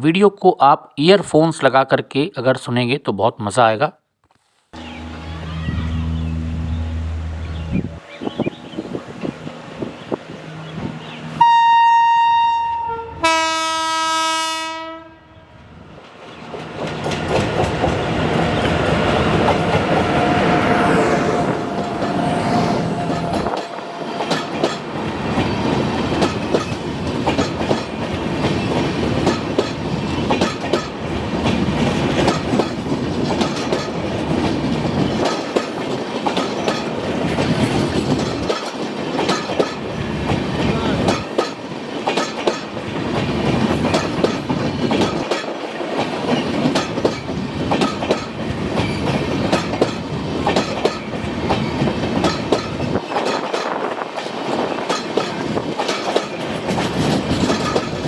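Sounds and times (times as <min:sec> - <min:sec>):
low rumble of train: 0:04.8 - 0:58.0
train wheels clattering over rail joints: 0:16.3 - 0:20.4, 0:21.7 - 0:58.0.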